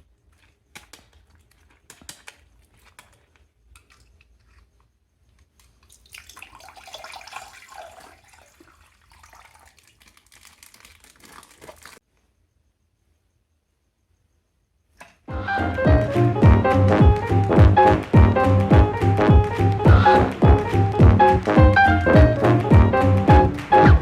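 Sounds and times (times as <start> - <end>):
plastic bags crinkling: 0.0 - 4.7, 8.2 - 12.0
water splashing and pouring: 5.8 - 12.0.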